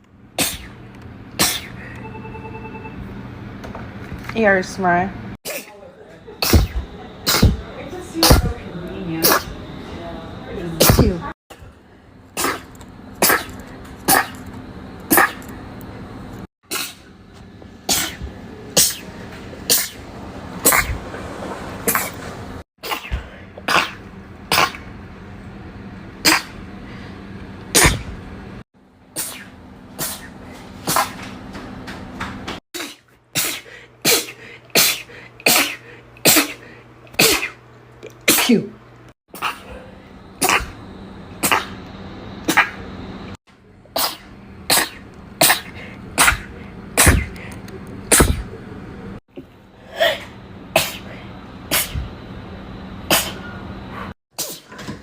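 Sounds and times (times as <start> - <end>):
woman sneezing rapidly: 0.4 - 0.8, 1.4 - 1.8, 5.4 - 5.8, 6.4 - 7.6, 10.8 - 11.2, 16.7 - 17.1, 17.9 - 19.0, 27.7 - 28.1, 32.8 - 37.6, 38.3 - 38.8, 40.4 - 40.8, 44.0 - 47.4, 48.1 - 48.5, 51.7 - 52.1, 53.1 - 53.5, 54.4 - 54.8.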